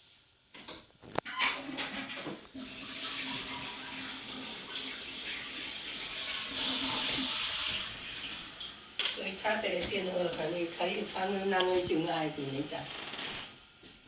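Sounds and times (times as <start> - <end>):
tap water running into sink: 1.8 - 10.5.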